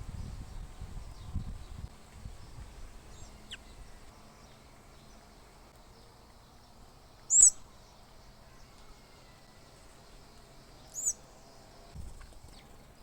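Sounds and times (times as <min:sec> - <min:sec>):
bird downward whistle: 0:07.3 - 0:07.6
high-pitched bird call: 0:07.3 - 0:07.6.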